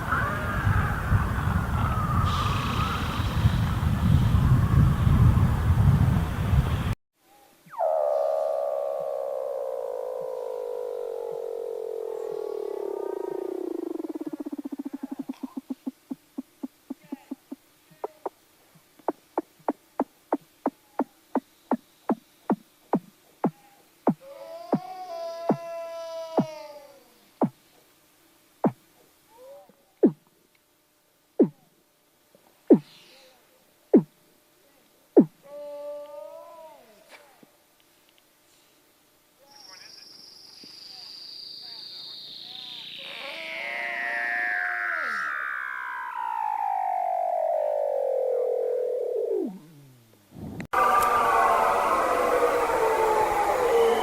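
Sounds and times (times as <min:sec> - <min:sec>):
seal calling: 0:07.7 - 0:18.3
seal wavering moan: 0:07.8 - 0:15.7, 0:43.1 - 0:49.8.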